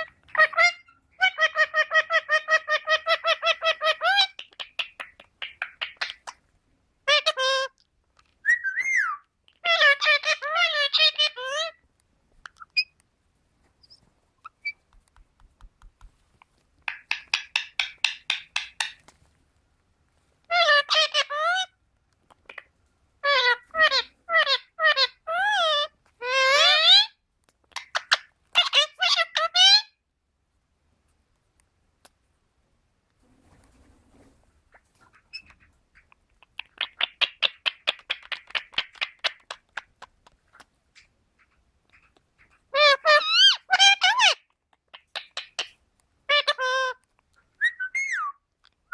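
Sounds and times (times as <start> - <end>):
parrot chirps: 0.0 - 6.4, 8.4 - 11.8, 12.4 - 13.0, 13.8 - 14.9, 16.8 - 19.0, 20.5 - 30.0, 34.7 - 48.9
parrot clicks and chirps: 4.2 - 6.4, 12.4 - 13.1, 13.8 - 19.1, 22.1 - 22.7, 35.2 - 45.8.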